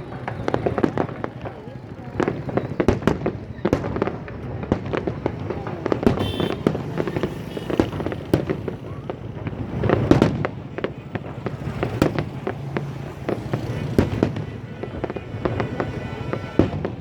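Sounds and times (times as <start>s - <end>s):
fireworks bursting: 0.0s - 17.0s.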